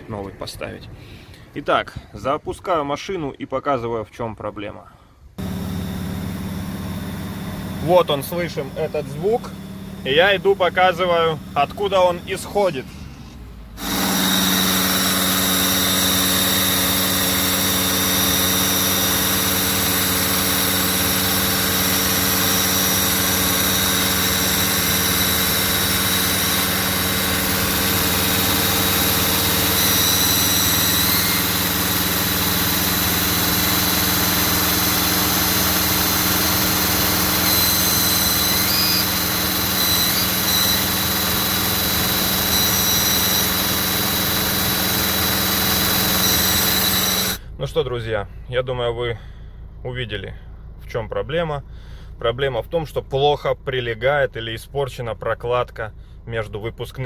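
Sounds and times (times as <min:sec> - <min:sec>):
high exhaust whistle: 0:05.4 - 0:12.7, 0:13.8 - 0:31.7, 0:34.0 - 0:47.4
diesel engine idling: 0:05.4 - 0:47.6.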